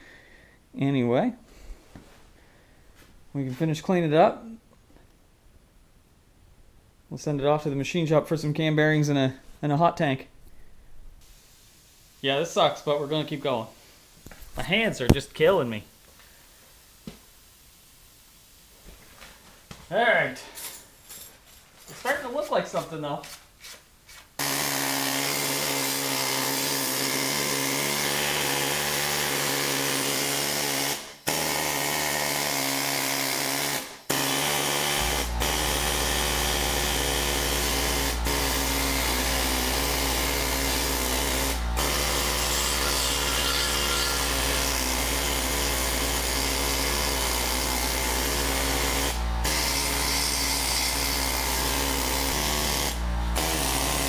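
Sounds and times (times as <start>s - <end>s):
power drill running: 24.4s - 54.0s.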